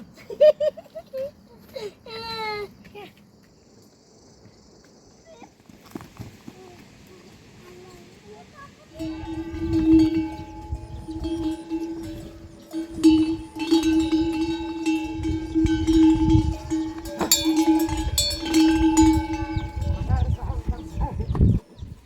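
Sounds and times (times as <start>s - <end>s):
metal bell clanging: 9.0s - 21.4s.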